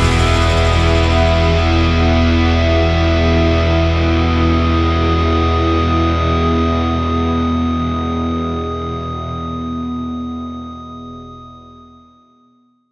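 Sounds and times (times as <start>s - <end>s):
distorted electric guitar music: 0.0s - 10.1s.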